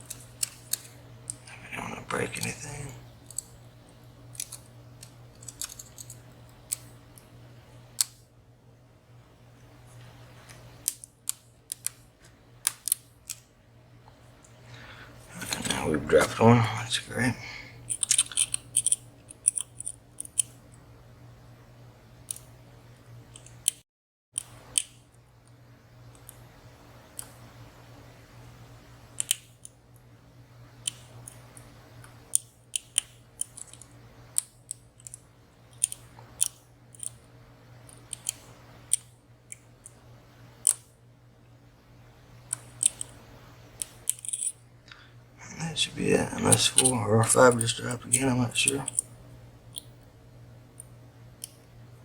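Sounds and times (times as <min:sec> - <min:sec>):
steady low hum: 0:00.0 - 0:23.8, 0:24.4 - 0:52.0
lock picks clicking in padlock: 0:17.9 - 0:20.5, 0:34.4 - 0:37.2, 0:43.8 - 0:44.6.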